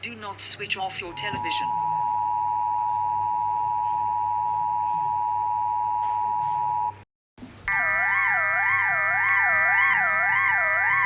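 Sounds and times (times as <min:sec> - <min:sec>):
chord of steady alarm tones: 0:01.1 - 0:06.9, 0:07.7 - 0:11.0
wavering siren-like tone: 0:07.7 - 0:11.0.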